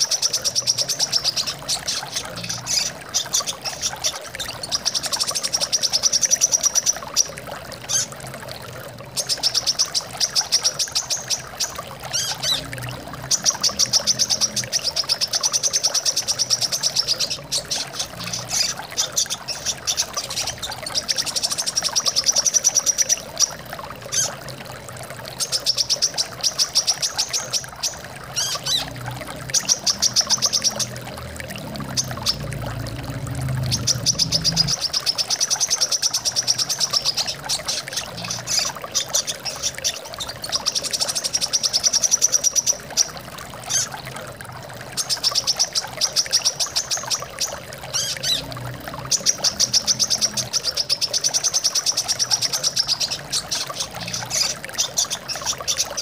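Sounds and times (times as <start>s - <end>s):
water flowing: 0.0s - 56.0s.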